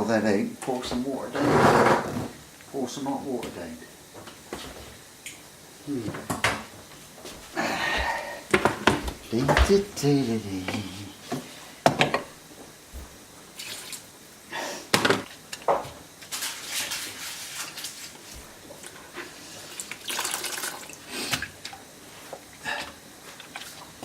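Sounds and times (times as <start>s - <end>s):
water splashing and dripping: 13.6s - 14.1s.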